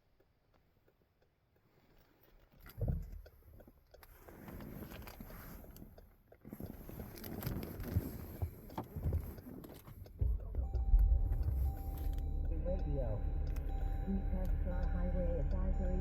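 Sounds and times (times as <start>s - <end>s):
rustling and scraping handling noise: 4.1s - 10.2s
scattered clicks: 5.9s - 16.0s.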